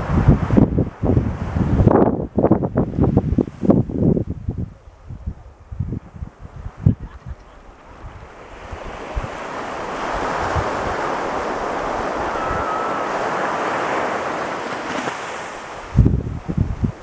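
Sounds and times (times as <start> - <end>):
wind buffeting microphone: 0.0 - 17.0
ocean wave breaking: 7.6 - 17.0.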